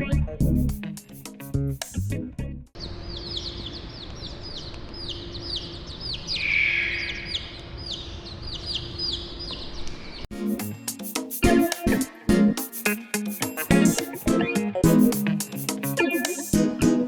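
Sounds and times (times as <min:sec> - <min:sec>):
flock of small birds chirping: 0:02.8 - 0:10.2.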